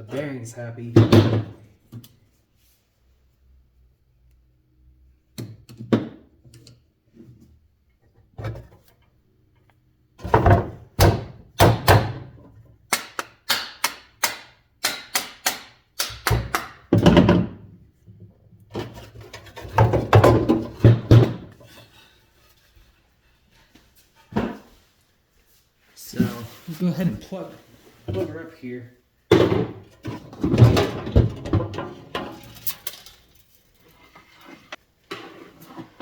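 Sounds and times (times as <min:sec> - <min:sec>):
metal parts knocking and clunking: 0:29.4 - 0:33.8.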